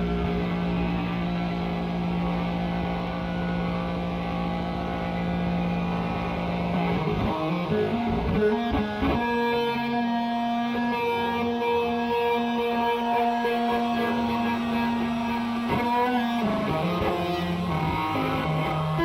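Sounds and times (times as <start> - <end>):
instrumental pop-rock chords: 0.0 - 19.0.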